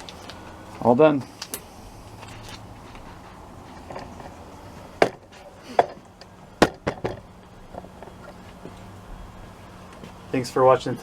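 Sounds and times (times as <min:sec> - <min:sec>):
sharp knocks on hard objects: 0:05.0 - 0:06.0, 0:06.6 - 0:07.8.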